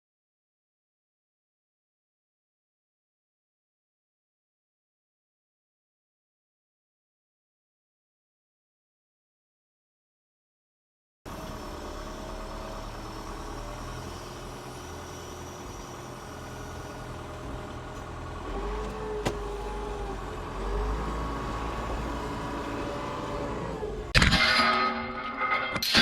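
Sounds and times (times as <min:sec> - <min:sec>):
truck diesel engine revving: 0:11.3 - 0:24.2.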